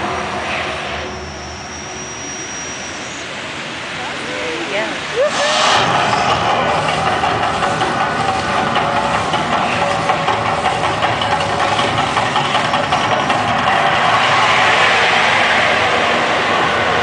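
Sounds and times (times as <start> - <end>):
loud rumbling roar: 4.8 - 17.0.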